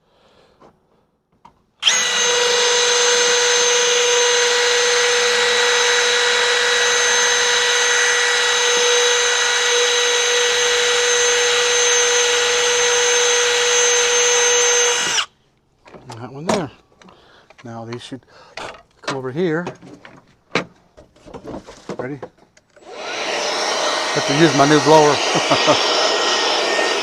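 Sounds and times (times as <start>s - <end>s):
power drill running: 1.8s - 15.3s, 22.8s - 27.0s.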